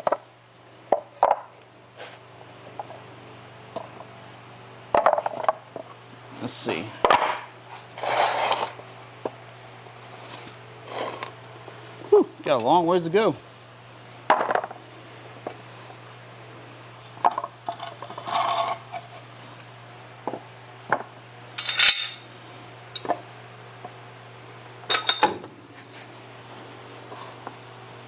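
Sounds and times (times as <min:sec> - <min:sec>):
steady low hum: 0:00.3 - 0:28.0
metallic clinks and clanks: 0:21.6 - 0:22.3.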